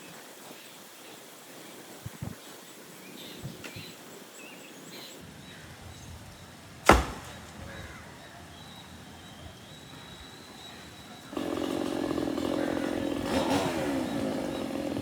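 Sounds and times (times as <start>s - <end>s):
sharp chop-like knock: 6.8s - 7.4s.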